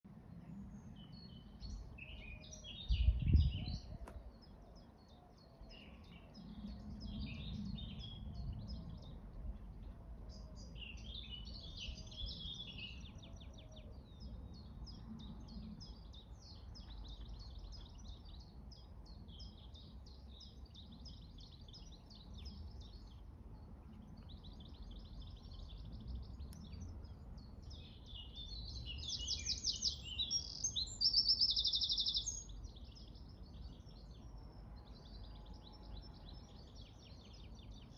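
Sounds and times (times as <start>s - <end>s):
small birds chirping: 0.1s - 37.9s.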